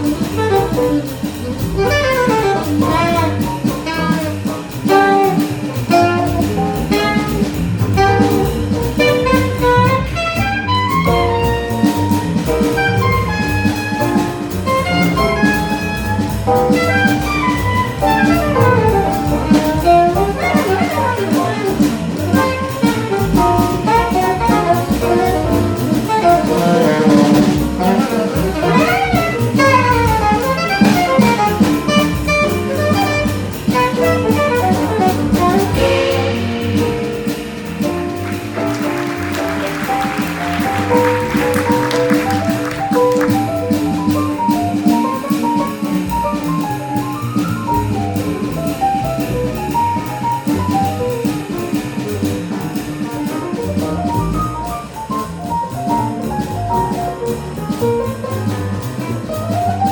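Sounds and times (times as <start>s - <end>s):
drum kit and rhythm section: 0.0s - 59.9s
saxophone fast runs: 12.7s - 44.5s.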